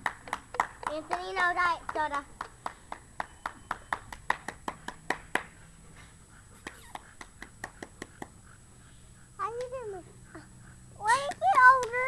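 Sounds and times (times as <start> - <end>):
hands clapping quickly: 0.0 - 5.6, 6.6 - 8.3, 11.2 - 12.0.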